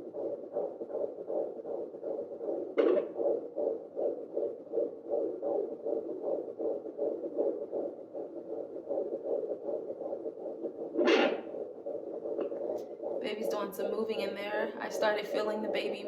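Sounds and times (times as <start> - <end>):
fetal heartbeat whooshing pulses: 0.0 - 16.0.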